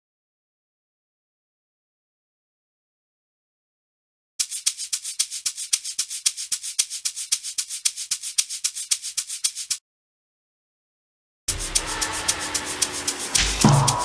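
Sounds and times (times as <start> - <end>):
fast shaker loop: 4.4 - 9.8, 11.5 - 14.0.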